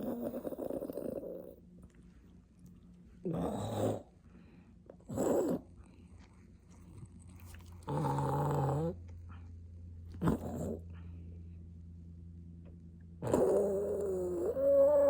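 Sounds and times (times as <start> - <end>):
dog growling: 0.0 - 1.6, 3.2 - 4.2, 5.0 - 5.7, 6.9 - 9.1, 10.1 - 11.0, 13.2 - 15.0
steady low hum: 0.0 - 15.0.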